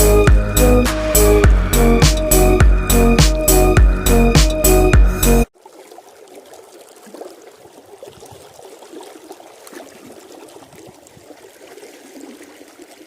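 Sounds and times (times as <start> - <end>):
small water splashes: 5.5 - 13.0
stream water trickling: 5.5 - 13.0.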